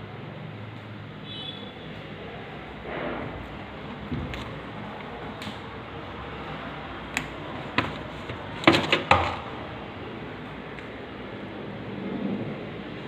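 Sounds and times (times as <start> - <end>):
washing machine hum: 0.0 - 13.0
sharp knocks and clicks: 7.2 - 9.5.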